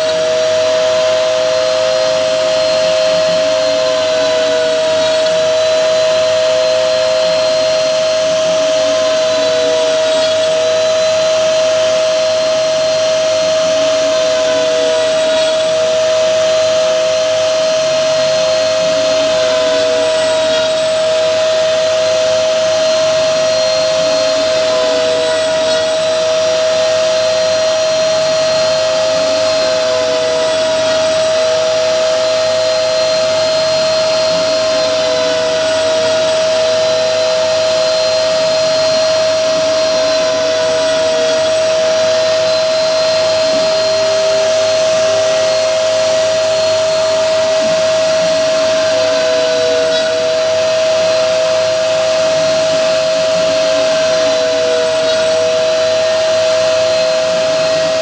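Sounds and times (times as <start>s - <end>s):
router spindle whining: 0.0s - 58.0s.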